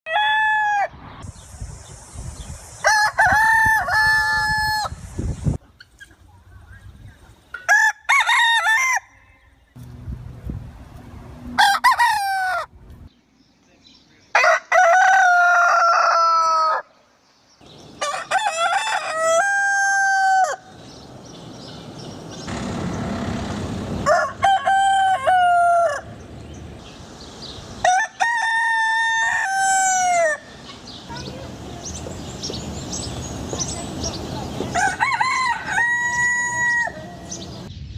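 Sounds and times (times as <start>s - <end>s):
roosters crowing: 0.1s - 1.0s, 2.8s - 5.0s, 7.6s - 9.6s, 11.5s - 12.8s, 14.3s - 17.0s, 17.6s - 21.7s, 22.3s - 30.7s, 34.4s - 37.7s.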